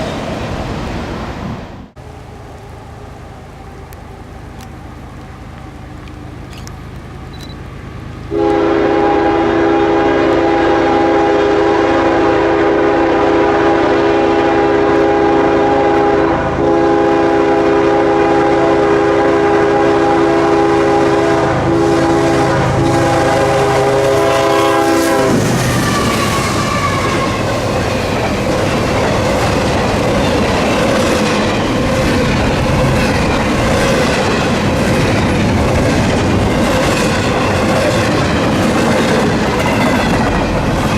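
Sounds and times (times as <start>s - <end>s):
train rumbling past: 0.0s - 40.9s
locomotive air horn: 8.3s - 27.5s
wheels clacking over rail joints: 25.5s - 40.9s.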